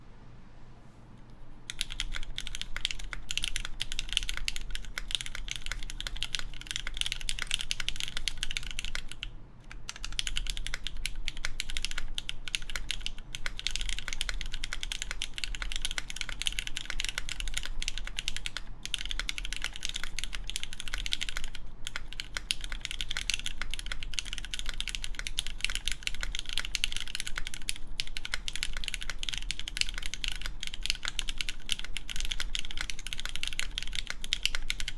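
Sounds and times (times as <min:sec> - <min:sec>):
mechanical keyboard typing: 0:01.7 - 0:34.9.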